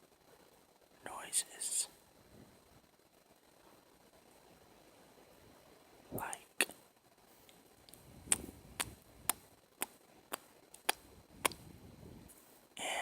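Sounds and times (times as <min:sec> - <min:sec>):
wet mouth clicks: 0:07.9 - 0:11.6.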